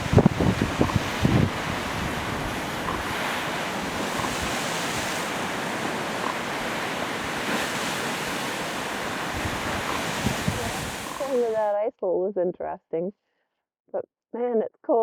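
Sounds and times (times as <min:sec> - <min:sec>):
waves washing in: 0:00.0 - 0:11.7
wind: 0:00.0 - 0:11.8.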